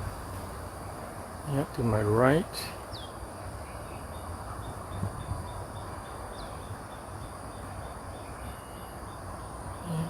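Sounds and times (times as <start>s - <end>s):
insect chirping: 0.0s - 10.0s
low rumble of distant noise: 0.0s - 10.0s.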